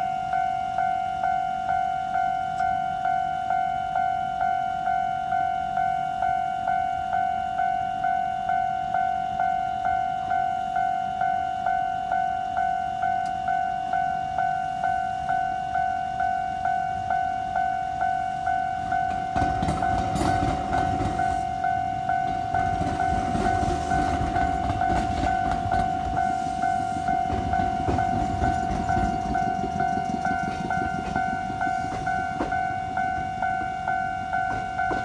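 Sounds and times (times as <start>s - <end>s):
level crossing bell clanging: 12.4s - 35.0s
train rumbling: 13.2s - 35.0s
train wheel clacks: 17.9s - 35.0s.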